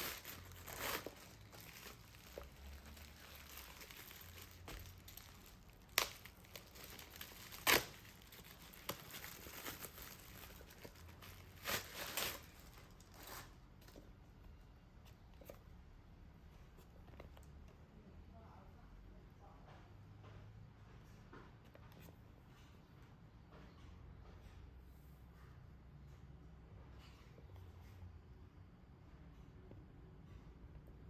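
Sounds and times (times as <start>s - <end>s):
packaging crinkling and tearing: 0.0s - 13.6s.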